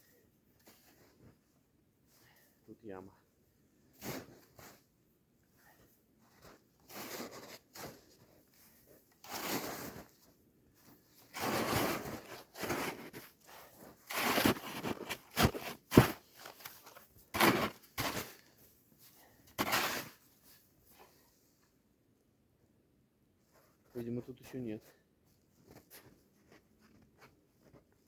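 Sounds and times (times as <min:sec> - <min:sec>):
footsteps crunching in snow: 0:06.2 - 0:18.5.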